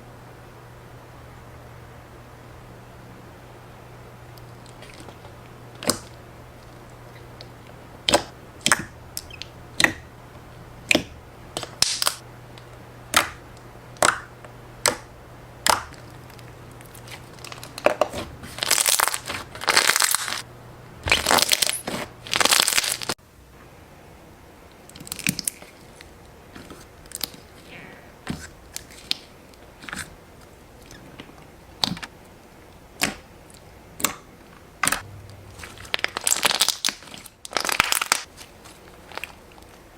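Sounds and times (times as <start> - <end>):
slime popping and crackling: 10.9 - 12.2, 15.6 - 20.4, 21.0 - 23.2, 34.8 - 38.3.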